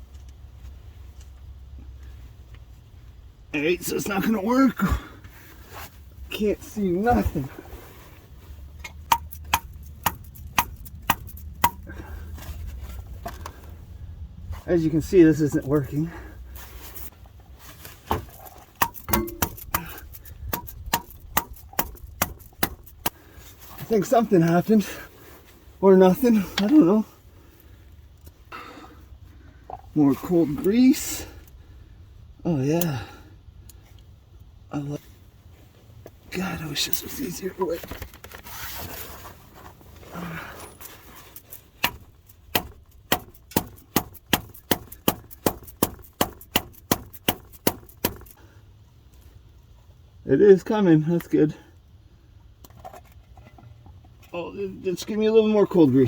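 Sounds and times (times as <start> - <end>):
hammer striking metal tool: 9.1 - 11.9, 18.8 - 23.0, 41.8 - 48.3.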